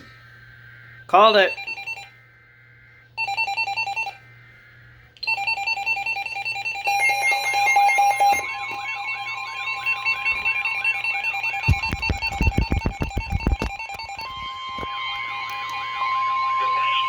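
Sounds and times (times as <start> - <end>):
faint digital data burst: 0.0 - 17.0
rapid electronic alert beeping: 0.3 - 17.0
warbling alert tone: 5.6 - 17.0.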